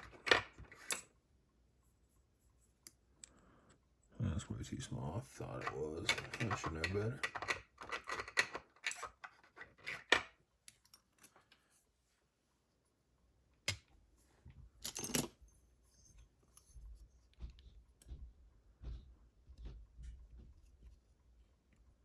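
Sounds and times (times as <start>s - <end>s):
metal lock parts clicking: 5.6s - 11.4s, 14.8s - 15.4s.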